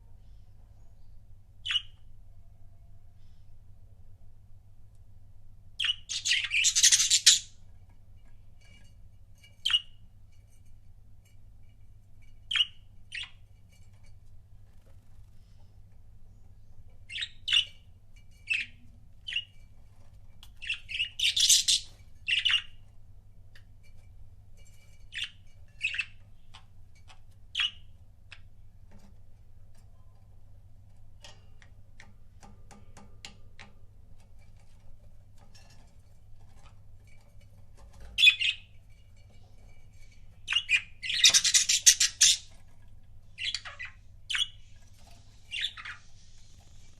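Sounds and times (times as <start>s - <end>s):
budgerigars chirping and squawking: 5.8s - 7.6s, 12.5s - 13.4s, 17.1s - 17.8s, 20.6s - 22.8s, 25.1s - 26.6s, 38.2s - 38.7s, 40.5s - 42.6s, 43.4s - 44.7s, 45.4s - 46.5s.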